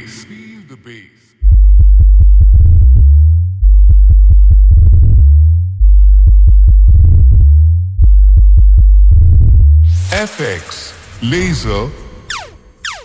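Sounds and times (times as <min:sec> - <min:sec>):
deep synth bass notes: 0:01.4 - 0:10.2, 0:11.4 - 0:13.0.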